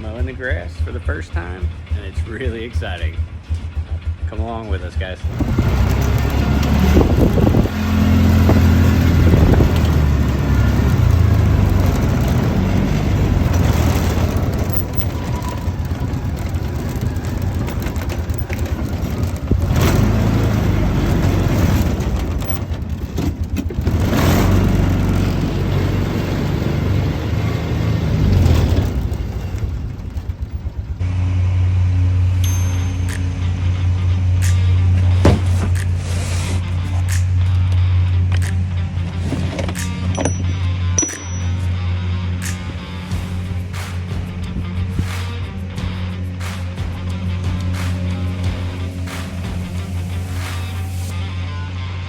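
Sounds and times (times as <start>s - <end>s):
engine running with deep hum: 0.0s - 52.0s.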